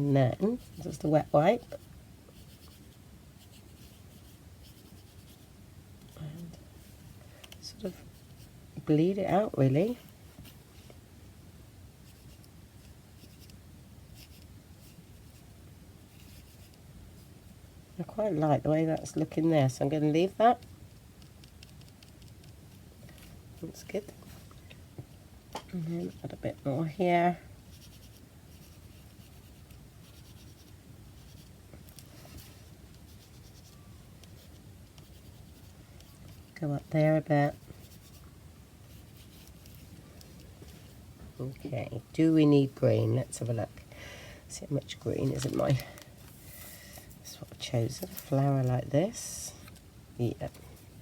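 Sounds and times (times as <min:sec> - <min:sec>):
low steady hum: 0:00.0 - 0:51.0
faint scratchy rubbing on card: 0:00.4 - 0:05.5, 0:12.0 - 0:15.5, 0:16.1 - 0:17.4, 0:27.7 - 0:39.9.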